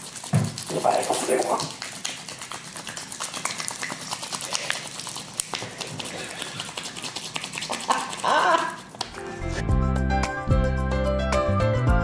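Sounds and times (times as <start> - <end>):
slime wet clicks and crackles: 0.0 - 9.2.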